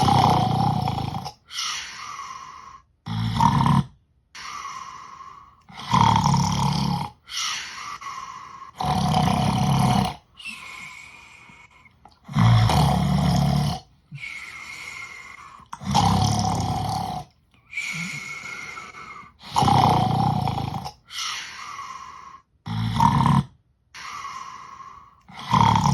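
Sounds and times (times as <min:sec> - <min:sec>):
pet snoring: 0:00.0 - 0:02.1, 0:03.0 - 0:04.8, 0:05.7 - 0:11.6, 0:12.2 - 0:24.2, 0:25.3 - 0:25.9
whistling out-breath: 0:10.4 - 0:11.9, 0:17.6 - 0:19.4.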